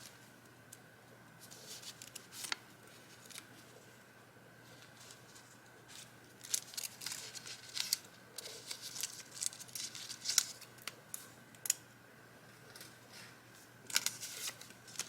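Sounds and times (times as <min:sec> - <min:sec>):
paper rustling and crinkling: 0:01.4 - 0:03.8, 0:04.6 - 0:11.0, 0:13.9 - 0:15.0.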